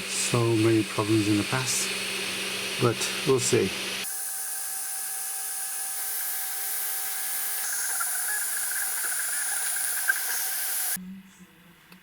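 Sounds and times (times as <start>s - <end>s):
printer fans whirring: 0.0s - 11.0s
stepper motors whining: 2.7s - 11.0s.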